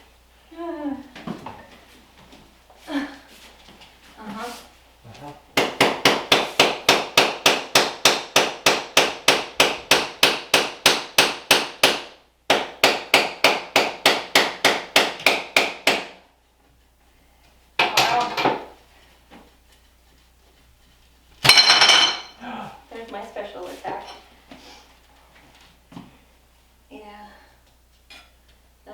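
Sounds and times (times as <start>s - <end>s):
tile clattering: 21.4s - 22.3s.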